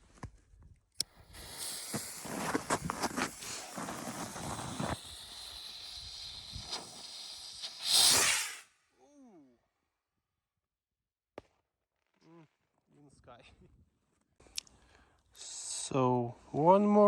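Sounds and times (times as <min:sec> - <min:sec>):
firework crackles: 0:01.0 - 0:08.7
firework rocket hissing: 0:01.0 - 0:08.7.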